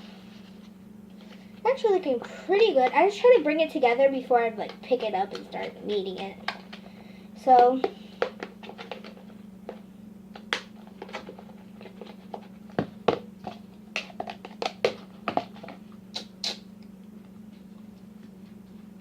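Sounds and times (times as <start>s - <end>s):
steady low hum: 0.0s - 19.0s
slime stirred and scraped in bowl: 7.8s - 15.8s.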